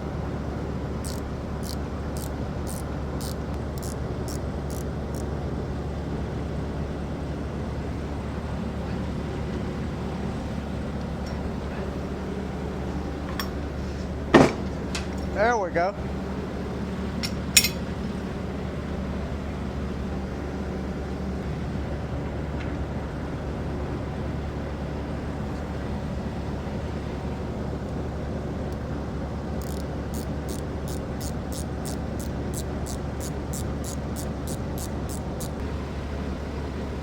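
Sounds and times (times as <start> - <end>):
heater droning: 0.0 - 37.0
quick regular clicking: 1.0 - 5.3, 29.6 - 35.6.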